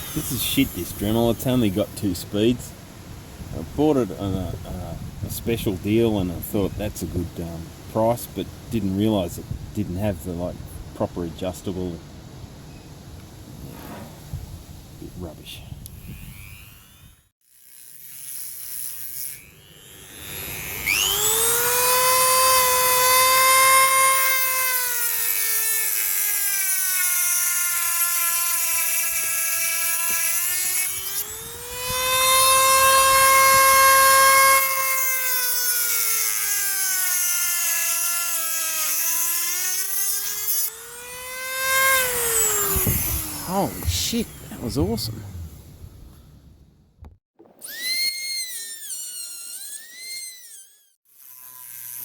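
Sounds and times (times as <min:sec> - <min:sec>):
rotary tool cutting ceramic: 0:00.0 - 0:01.9, 0:15.8 - 0:44.9, 0:47.5 - 0:52.0.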